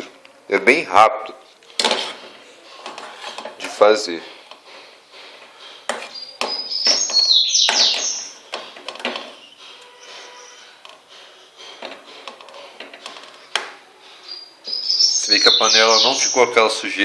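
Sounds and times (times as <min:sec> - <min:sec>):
high-pitched sliding squeal: 0:05.5 - 0:11.8.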